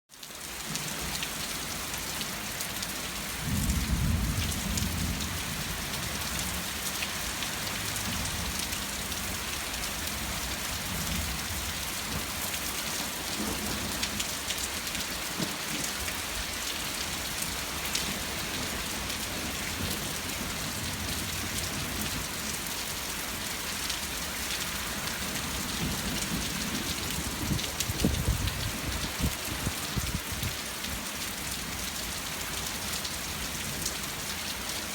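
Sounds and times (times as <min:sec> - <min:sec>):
steady rain falling: 0:00.1 - 0:34.9
low thunder rumbling: 0:03.4 - 0:06.6, 0:25.4 - 0:30.6.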